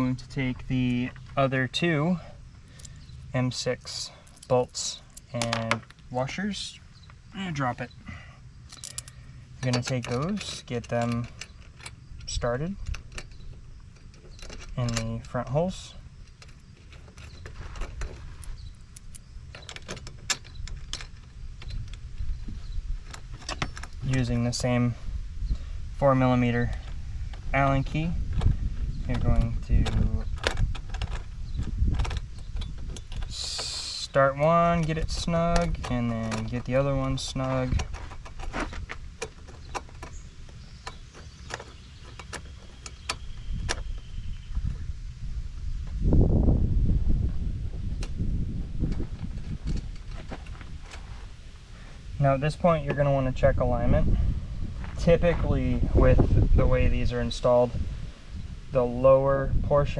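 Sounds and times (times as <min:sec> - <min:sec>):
small bolts and washers clicking: 0:00.0 - 0:22.3, 0:26.4 - 0:44.0
low rumble of handling noise: 0:00.0 - 0:59.9
metal key clicking on bolts: 0:08.7 - 0:15.4.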